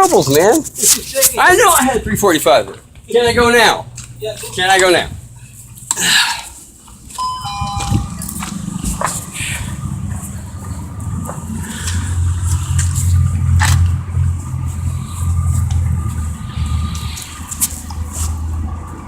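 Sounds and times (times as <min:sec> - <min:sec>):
steady low rumble: 0:01.9 - 0:05.9, 0:06.6 - 0:19.0
short electronic chime: 0:07.2 - 0:08.4.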